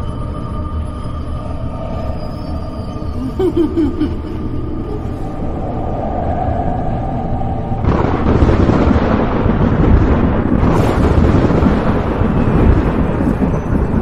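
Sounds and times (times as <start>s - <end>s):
faint eerie tones: 0.0s - 14.0s
low rumble: 0.0s - 14.0s
thunder roll: 5.6s - 14.0s.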